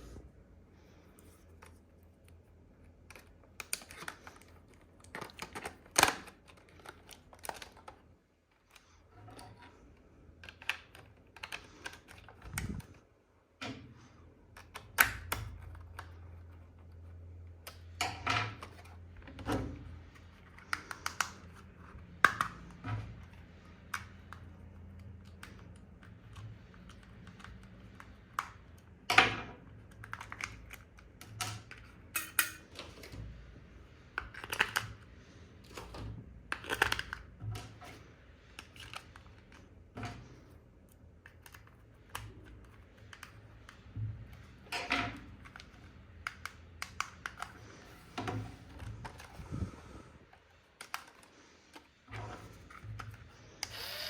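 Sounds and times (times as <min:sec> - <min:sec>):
low steady hum: 0:00.0 - 0:54.0
hands handling toy packaging: 0:01.2 - 0:13.0, 0:45.2 - 0:53.8.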